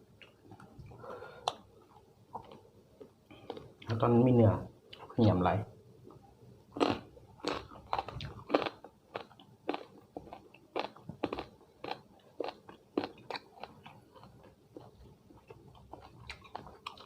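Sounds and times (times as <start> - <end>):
person chewing crunchy food: 1.4 - 3.9, 6.8 - 17.0.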